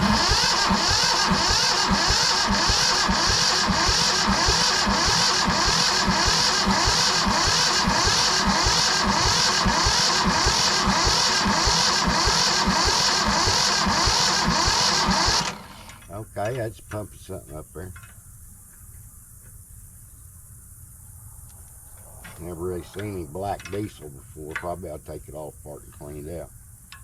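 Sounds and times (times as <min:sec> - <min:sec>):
diesel engine cranking without firing: 0:00.0 - 0:17.1, 0:22.0 - 0:25.2.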